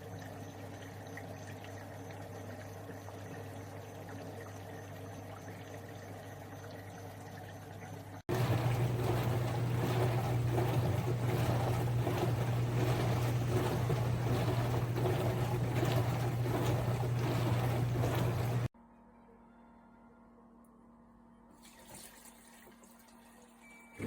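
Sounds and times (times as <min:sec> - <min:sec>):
dishwasher pump hum: 0:00.0 - 0:18.7
water spraying and splashing: 0:08.3 - 0:18.7.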